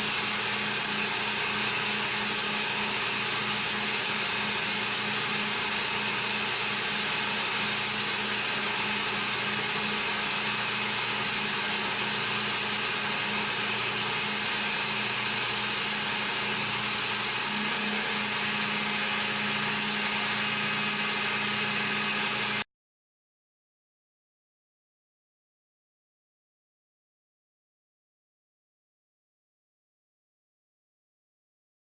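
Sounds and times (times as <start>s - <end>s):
milling machine running: 0.0s - 22.6s.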